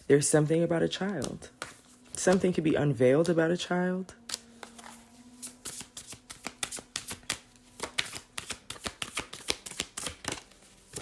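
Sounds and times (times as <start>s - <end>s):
cards being shuffled: 1.0s - 2.6s, 4.2s - 11.0s.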